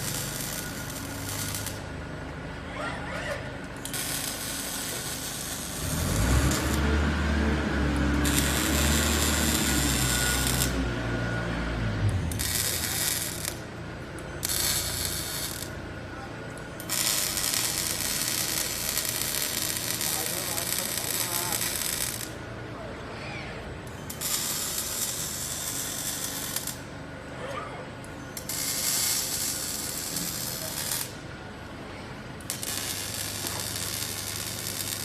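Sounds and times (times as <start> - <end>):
welding arc hissing: 0.0 - 1.9, 3.9 - 7.0, 8.1 - 10.8, 12.2 - 13.7, 14.4 - 15.8, 16.8 - 22.4, 24.1 - 26.9, 28.4 - 31.2, 32.5 - 35.0.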